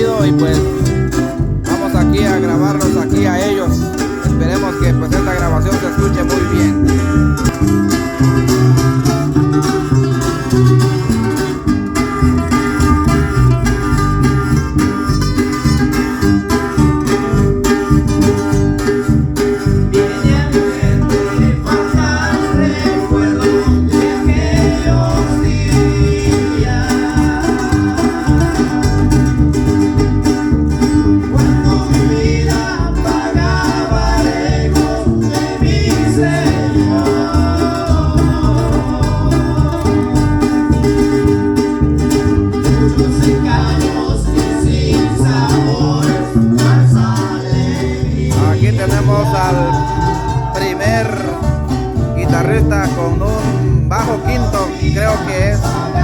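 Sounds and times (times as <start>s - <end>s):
band playing plucked strings: 0.0s - 56.0s
person singing: 1.6s - 7.6s, 19.8s - 29.6s, 31.3s - 40.8s, 42.6s - 56.0s.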